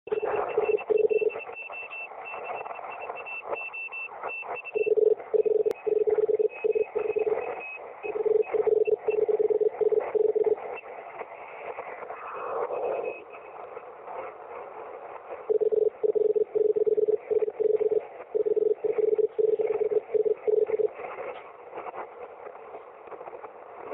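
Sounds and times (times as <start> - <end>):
higher-pitched morse signal: 0.1 - 10.8, 15.5 - 21.0
low morse code tone: 0.1 - 11.0, 15.4 - 21.3
radio band hiss and static: 0.1 - 23.9.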